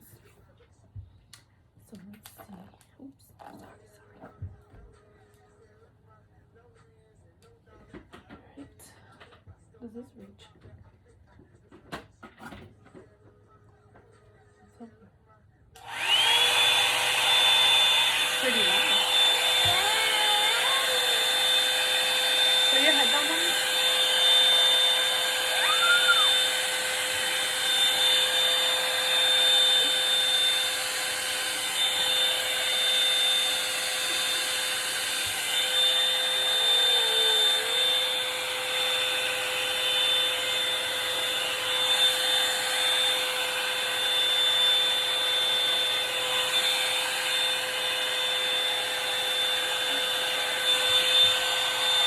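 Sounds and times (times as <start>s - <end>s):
hot-air brush dryer blowing: 15.8s - 52.0s.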